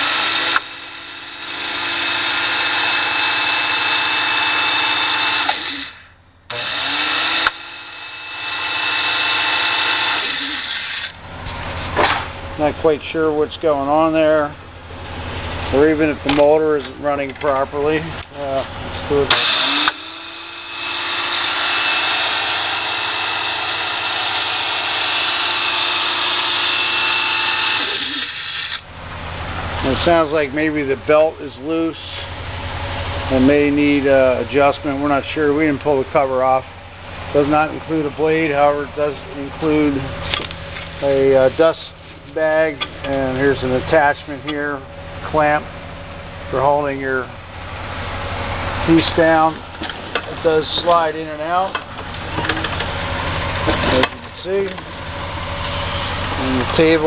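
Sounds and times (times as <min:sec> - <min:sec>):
miter saw motor whining: 0:00.0 - 0:11.2, 0:19.3 - 0:28.9.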